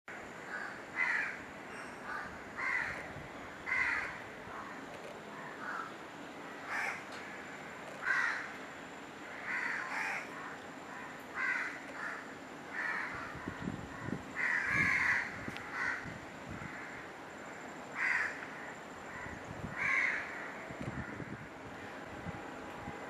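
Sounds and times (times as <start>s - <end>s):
crow cawing: 0.5s - 1.4s, 2.0s - 4.7s, 5.3s - 5.9s, 6.5s - 7.3s, 8.0s - 8.6s, 9.2s - 17.1s, 17.9s - 21.5s.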